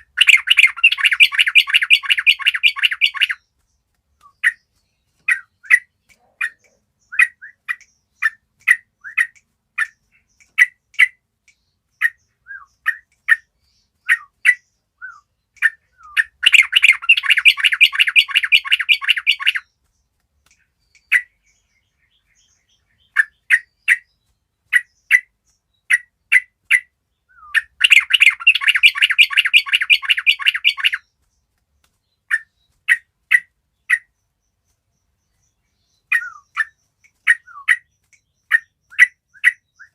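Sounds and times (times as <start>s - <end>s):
birds chattering: 0.0s - 39.9s
bulbuls chirping: 0.0s - 39.9s.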